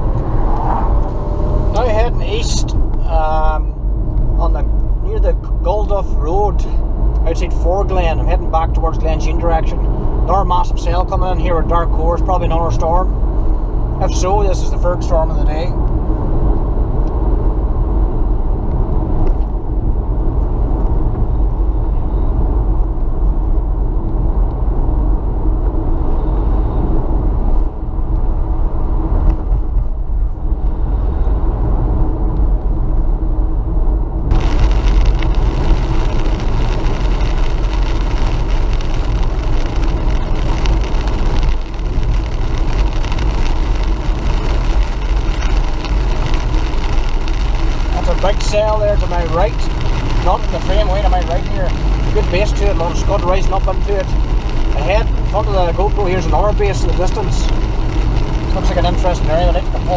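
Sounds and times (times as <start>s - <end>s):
car engine and tyre rumble: 0.0s - 59.9s
loud hiss: 34.3s - 59.9s.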